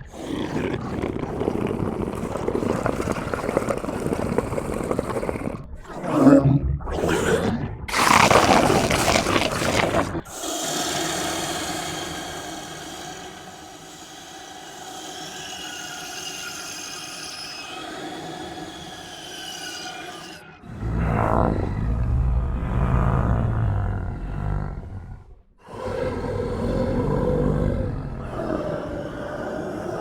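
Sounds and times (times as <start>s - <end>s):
deep rumbling growl: 0.0s - 10.4s, 20.6s - 30.0s
harsh rasping monster growl: 0.0s - 16.3s, 17.8s - 30.0s.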